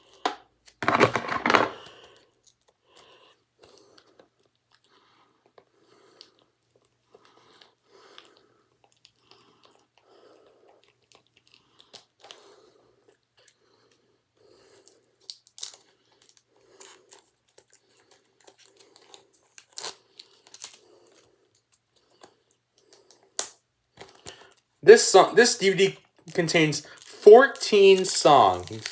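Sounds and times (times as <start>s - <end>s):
plastic wrapping crinkling and tearing: 15.3s - 21.3s, 26.9s - 28.9s
sharp clicks and crackles: 28.0s - 28.9s.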